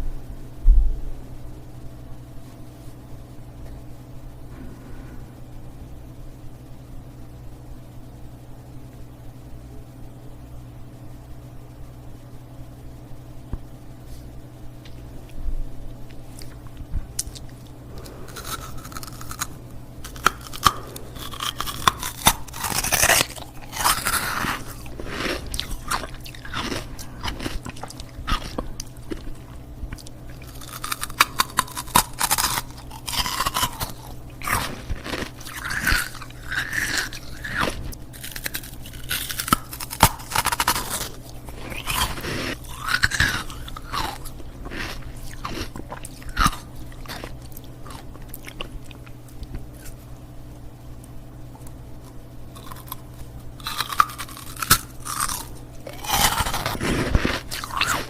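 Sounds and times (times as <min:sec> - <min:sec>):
faint low hum: 0:00.0 - 0:58.0
ice cubes crunching: 0:17.2 - 0:49.0, 0:52.6 - 0:53.0, 0:53.6 - 0:58.0.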